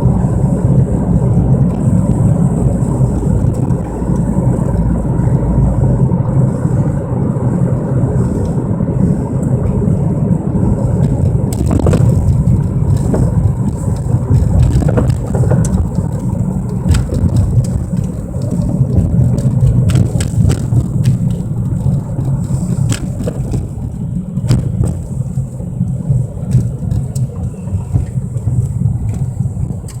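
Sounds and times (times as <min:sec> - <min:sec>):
car low drone while driving: 0:00.0 - 0:30.0
sharp clicks and knocks: 0:11.0 - 0:30.0.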